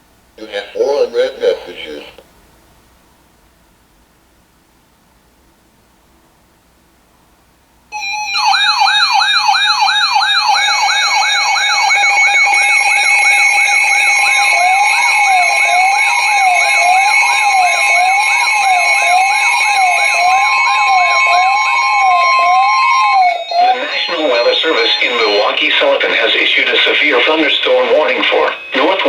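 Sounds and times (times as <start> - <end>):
steady high tone: 7.9 - 29.0
rising and falling siren wail: 8.0 - 26.3
fast sweeping electronic siren: 8.0 - 29.0
steady alert tones: 8.0 - 29.0.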